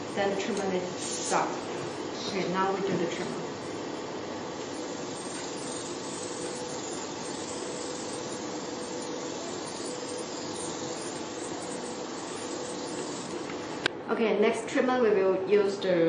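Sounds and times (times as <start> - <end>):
hiss of mist spray: 0.0 - 1.9, 4.6 - 13.8
faint steady hum: 0.0 - 16.0.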